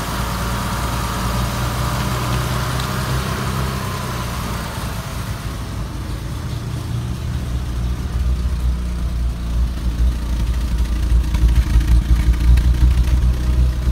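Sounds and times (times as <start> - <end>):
car engine idling: 0.0 - 13.9.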